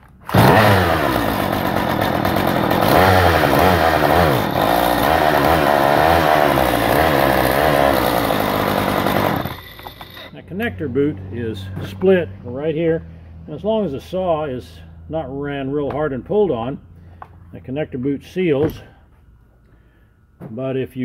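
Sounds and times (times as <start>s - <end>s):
chainsaw engine surging: 0.3s - 10.4s.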